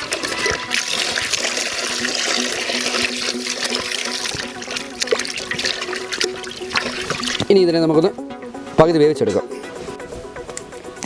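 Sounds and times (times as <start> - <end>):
water pouring into a pot: 0.0 - 7.7.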